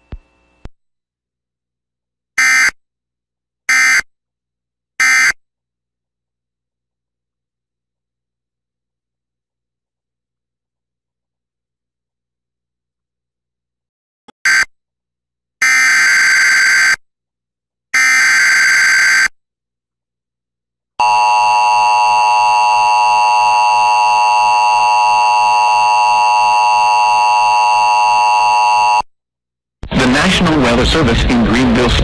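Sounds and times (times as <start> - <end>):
harsh two-tone attention signal: 21.0 - 29.0.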